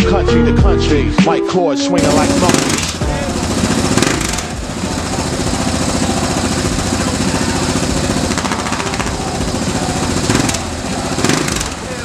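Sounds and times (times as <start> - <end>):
motorcycle engine pulsing exhaust: 2.0 - 12.0.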